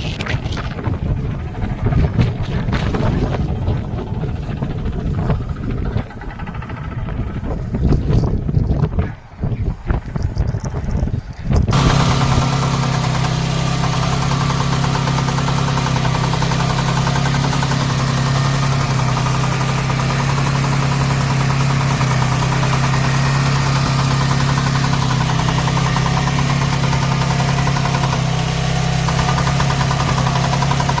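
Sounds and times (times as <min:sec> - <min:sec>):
small engine running: 0:11.7 - 0:31.0.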